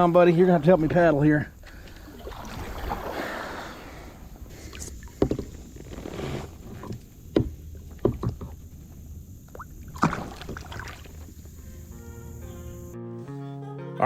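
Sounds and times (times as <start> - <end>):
paddle strokes in water: 1.6 - 11.6.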